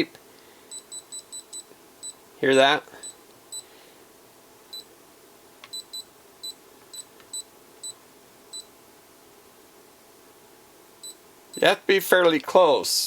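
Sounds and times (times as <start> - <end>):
multimeter high-pitched beeps: 0.7 - 2.2, 5.7 - 8.7, 11.0 - 11.7.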